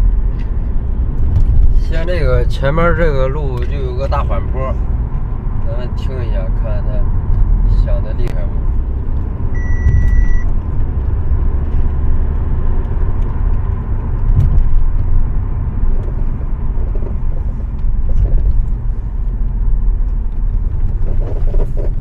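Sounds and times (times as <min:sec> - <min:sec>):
road and tyre rumble in car: 0:00.0 - 0:22.0
suspension squeaking and creaking: 0:16.0 - 0:22.0.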